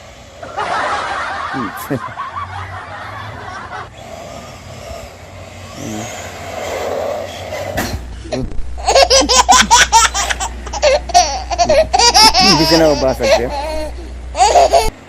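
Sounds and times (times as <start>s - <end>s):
toy car electric motor whirring: 0.0s - 0.5s, 3.7s - 8.0s, 8.8s - 14.9s
laughter: 0.4s - 3.9s, 8.9s - 11.0s.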